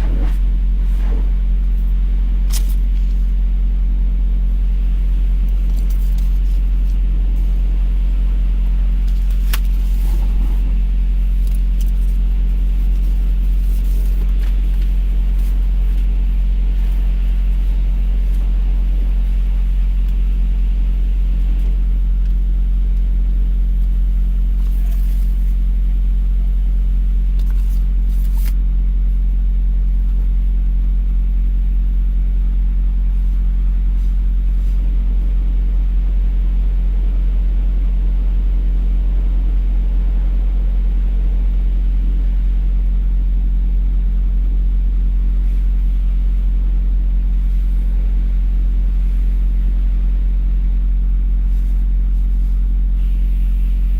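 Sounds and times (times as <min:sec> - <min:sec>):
diesel truck engine running: 0:00.0 - 0:24.6, 0:30.8 - 0:46.5.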